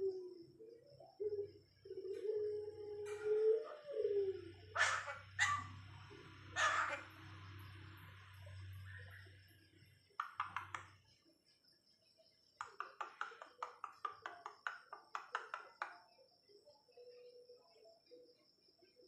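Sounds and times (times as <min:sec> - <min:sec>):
starling calling sharp notes: 0:04.6 - 0:07.3.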